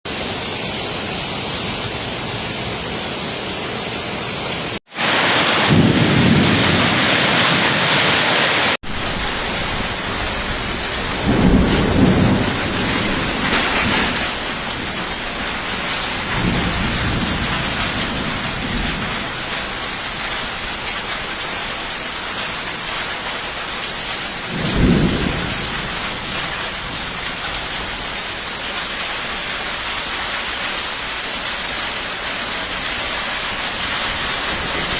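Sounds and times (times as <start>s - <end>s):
heavy rain pouring: 0.1s - 34.9s
deep thunder rumbles: 5.1s - 31.1s.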